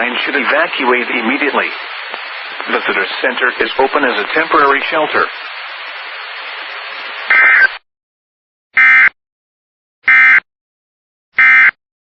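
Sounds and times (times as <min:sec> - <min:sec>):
radio hiss: 0:00.0 - 0:07.8.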